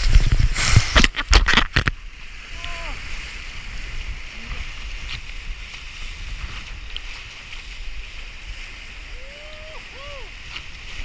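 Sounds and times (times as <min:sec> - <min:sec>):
sea water washing: 0:00.0 - 0:11.0
wind buffeting microphone: 0:00.0 - 0:11.0.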